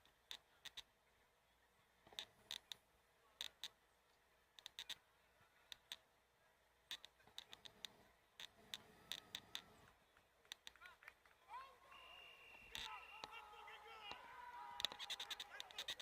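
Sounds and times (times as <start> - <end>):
faint sharp clicks and ticks: 0.0 - 1.0, 2.0 - 6.1, 6.8 - 11.4, 14.0 - 16.0.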